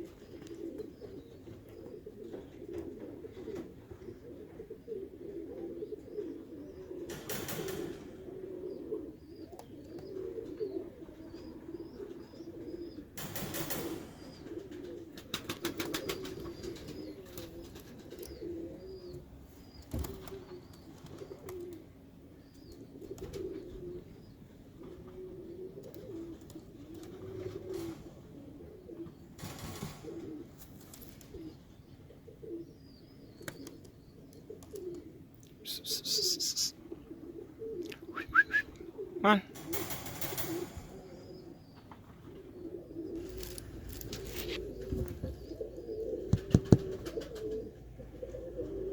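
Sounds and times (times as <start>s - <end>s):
pigeons cooing: 0.0s - 48.9s
wings flapping: 13.2s - 18.2s, 43.1s - 45.5s, 46.2s - 47.7s.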